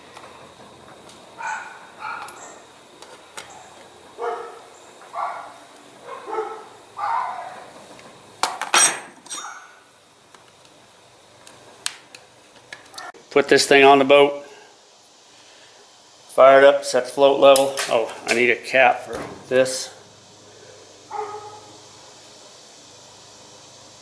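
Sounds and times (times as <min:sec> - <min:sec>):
dog barking: 0:01.4 - 0:02.6, 0:03.5 - 0:07.8, 0:21.1 - 0:21.8
sharp metal clinks: 0:08.7 - 0:09.8.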